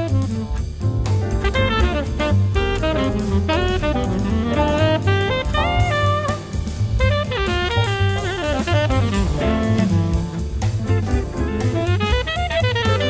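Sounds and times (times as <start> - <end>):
instrumental jazz with drums and bass: 0.0 - 13.0.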